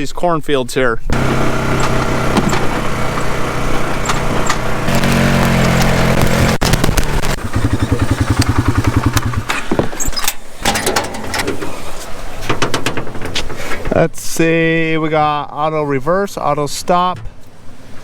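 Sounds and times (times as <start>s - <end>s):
vehicle engine running: 1.1s - 10.0s
sharp clicks: 3.9s - 9.7s.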